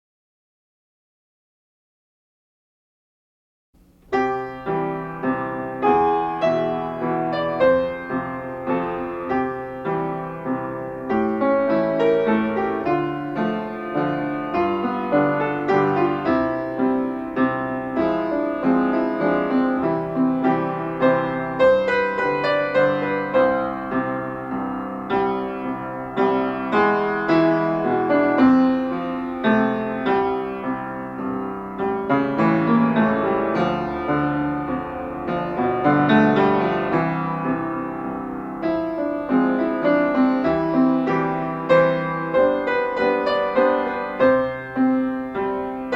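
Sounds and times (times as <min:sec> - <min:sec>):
solo piano piece: 0:03.8 - 0:45.9.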